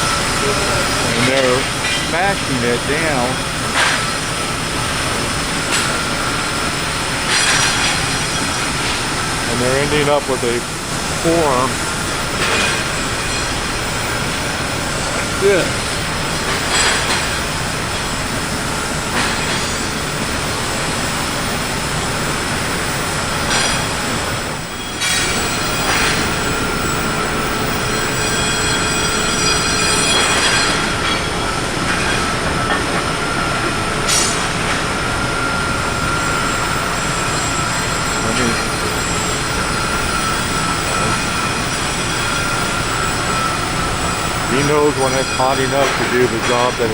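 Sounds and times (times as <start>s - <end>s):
sharp noises: 0.3s - 3.6s
machinery din: 0.4s - 3.6s
high whining tones: 8.3s - 18.6s.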